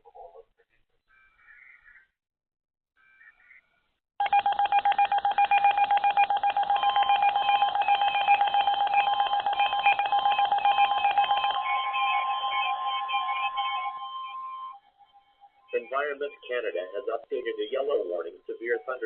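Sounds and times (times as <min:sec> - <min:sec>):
pulsing electronic alert tone: 0:05.8 - 0:14.9.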